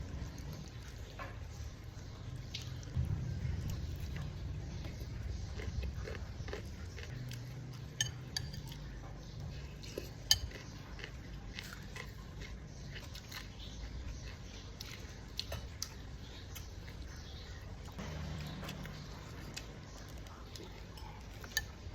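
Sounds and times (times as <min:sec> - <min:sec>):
low steady hum: 0:00.0 - 0:21.9
utensils clinking against a dish: 0:06.5 - 0:13.5, 0:20.2 - 0:21.9.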